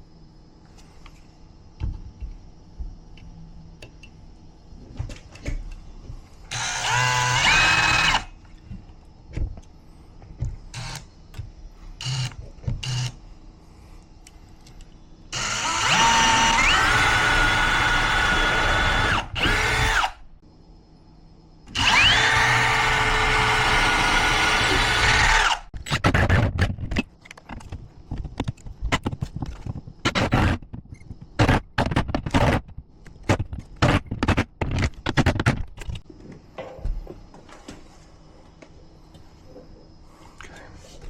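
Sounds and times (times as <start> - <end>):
power drill whining: 6.5 - 8.3, 10.8 - 11.0, 12.0 - 13.2, 15.3 - 20.2, 21.7 - 25.7
knocks and clunks of tools: 25.8 - 37.8.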